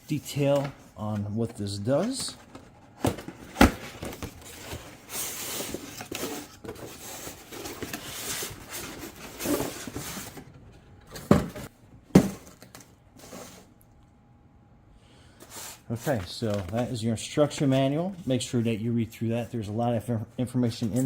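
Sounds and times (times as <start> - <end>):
cardboard packaging rustling: 0.2 - 10.5.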